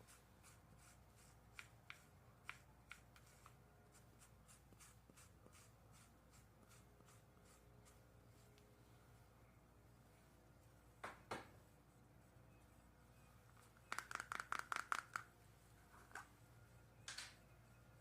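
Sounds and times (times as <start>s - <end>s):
sticky clicks of hair gel: 13.8s - 15.3s.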